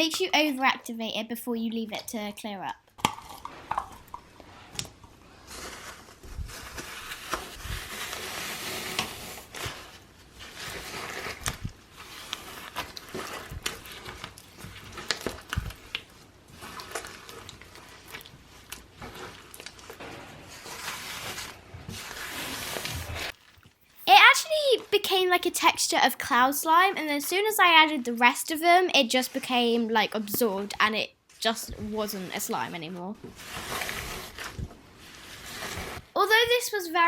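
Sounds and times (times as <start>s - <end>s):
hands squishing crackling slime: 3.0s - 25.7s.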